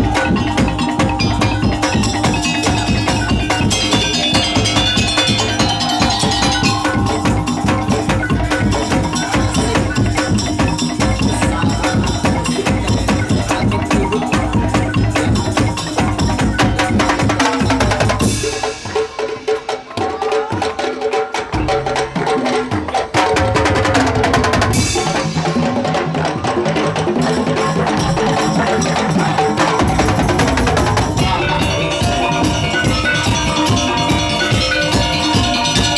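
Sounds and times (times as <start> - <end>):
held melodic notes: 0.0 - 18.4, 27.4 - 35.9
rhythmic wooden slit drums: 0.0 - 35.9.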